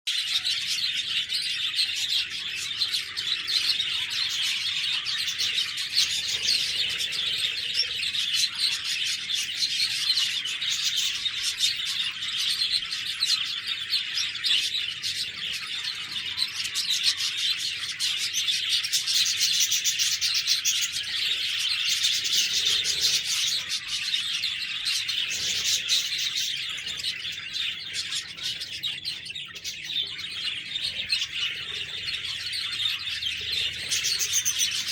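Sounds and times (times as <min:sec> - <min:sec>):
budgerigars chirping: 0:00.1 - 0:34.9.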